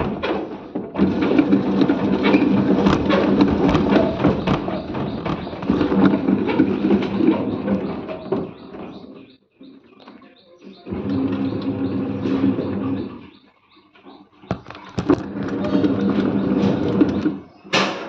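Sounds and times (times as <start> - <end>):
washing machine clicking and knocking: 0.0 - 8.8
washing machine humming: 0.0 - 8.8, 10.9 - 13.2, 14.5 - 17.5.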